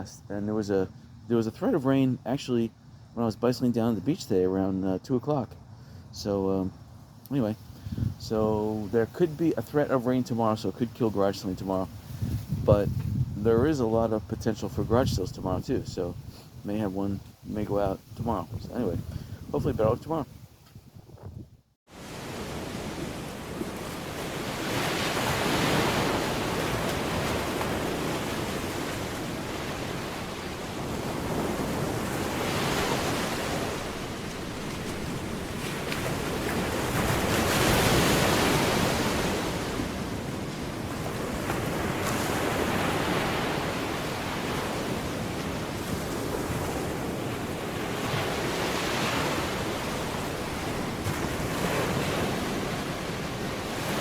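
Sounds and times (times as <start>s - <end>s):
waves breaking on shore: 21.9s - 54.0s.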